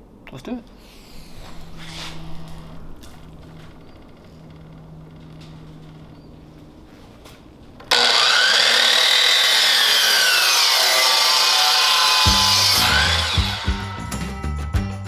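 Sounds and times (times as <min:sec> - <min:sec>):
power saw cutting wood: 0:07.9 - 0:14.0
music with low beat: 0:12.3 - 0:15.0.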